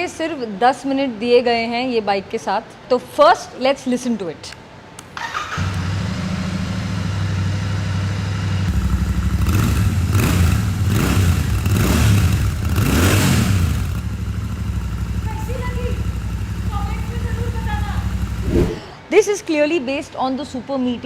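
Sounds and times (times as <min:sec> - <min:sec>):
motorcycle engine starting and revving: 0:05.2 - 0:18.8.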